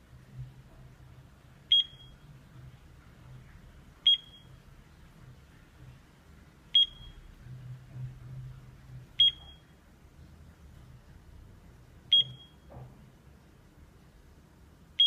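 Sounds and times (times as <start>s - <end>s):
alarm clock beeping: 4.1s - 4.5s, 6.8s - 7.2s, 9.2s - 9.6s, 12.1s - 12.6s.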